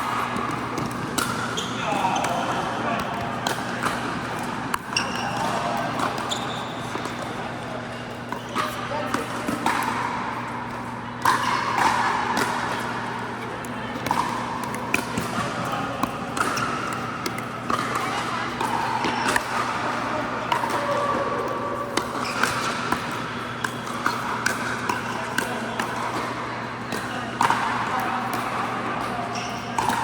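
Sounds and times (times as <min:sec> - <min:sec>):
ball bouncing on hard court: 0:00.0 - 0:13.0, 0:13.6 - 0:19.8
murmur of voices: 0:00.0 - 0:22.2.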